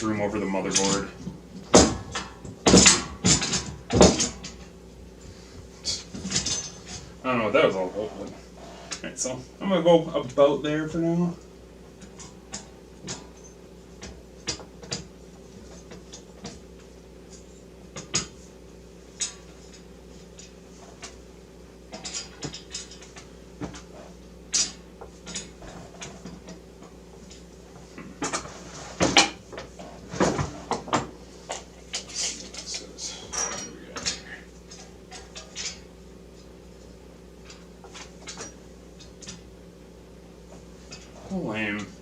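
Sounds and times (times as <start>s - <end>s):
metal frame parts clinking: 5.8s - 7.0s, 31.9s - 35.9s.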